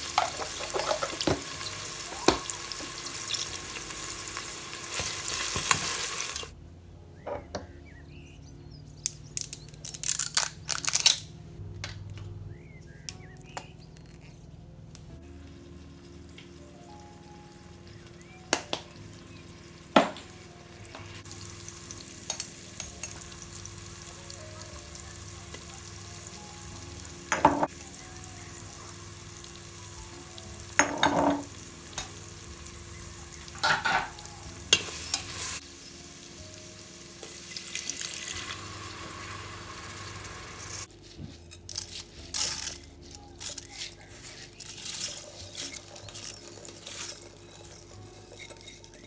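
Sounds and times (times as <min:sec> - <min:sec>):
food sizzling in a pan: 0:00.0 - 0:06.5, 0:15.6 - 0:40.9.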